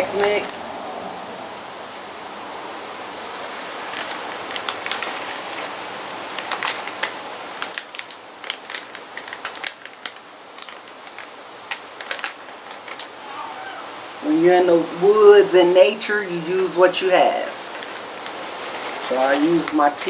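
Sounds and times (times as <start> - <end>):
steady background hiss: 0.0 - 20.0
plastic bag crinkling: 3.9 - 13.2, 17.7 - 20.0.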